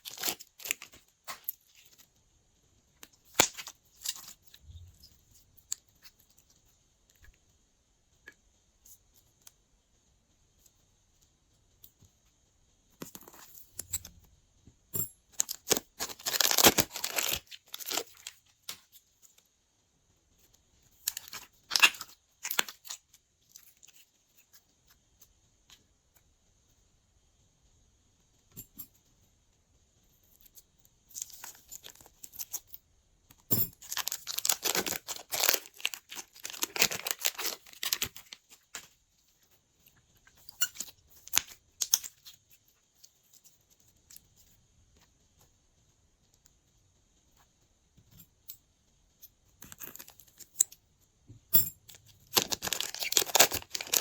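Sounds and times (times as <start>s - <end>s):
slime tearing and crinkling: 0.0s - 1.5s, 15.6s - 18.4s, 33.8s - 38.5s, 52.3s - 54.0s.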